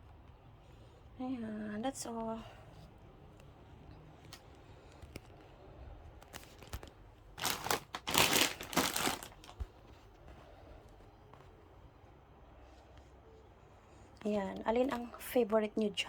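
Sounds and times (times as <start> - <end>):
plastic packets crinkling: 6.3 - 9.7.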